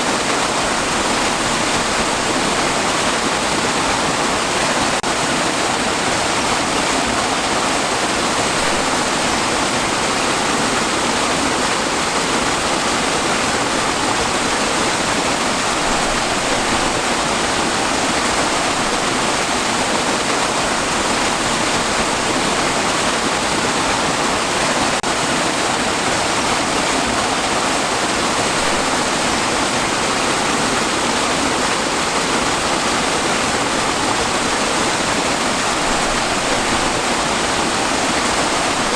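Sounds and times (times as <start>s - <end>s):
waterfall rushing: 0.0s - 38.9s.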